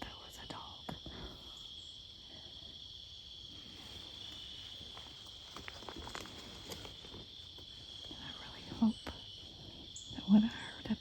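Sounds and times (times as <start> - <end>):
insects trilling: 0.0 - 11.0
faint clicks and rustles: 3.6 - 9.2.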